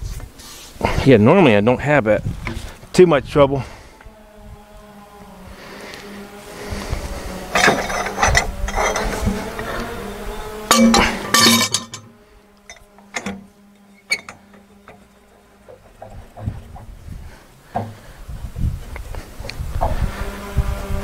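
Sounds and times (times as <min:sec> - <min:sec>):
metal clanking: 0:07.5 - 0:18.1.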